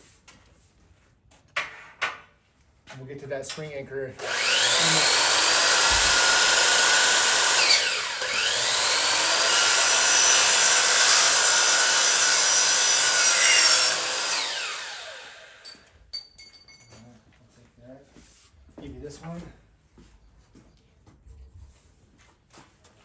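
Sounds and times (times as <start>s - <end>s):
electric miter saw cutting metal: 4.2s - 15.8s.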